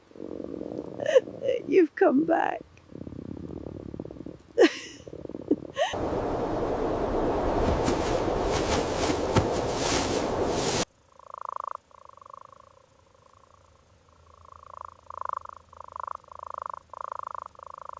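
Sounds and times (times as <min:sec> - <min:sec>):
animal purring rumble: 0:00.0 - 0:10.8
loud steady rushing noise: 0:06.0 - 0:10.9.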